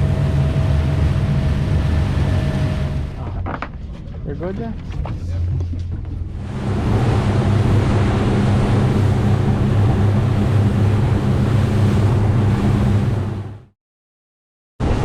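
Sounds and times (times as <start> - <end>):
wind and water rushing: 0.0 - 3.2, 6.3 - 13.7
boat engine drone: 0.0 - 13.8.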